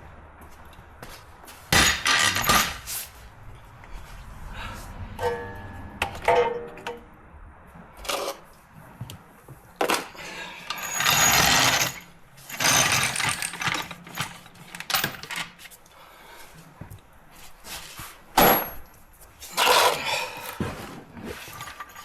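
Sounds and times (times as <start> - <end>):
rattling bursts: 1.7 - 3.7, 10.0 - 15.6
metal clank: 5.1 - 7.2.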